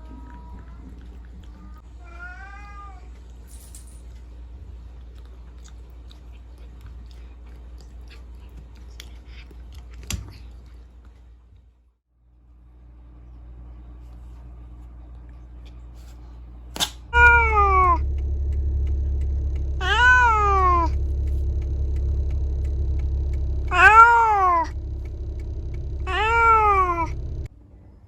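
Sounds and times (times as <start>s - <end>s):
cat meowing: 2.0s - 3.1s, 17.2s - 18.0s, 26.1s - 27.1s
steady low rumble: 17.1s - 27.5s.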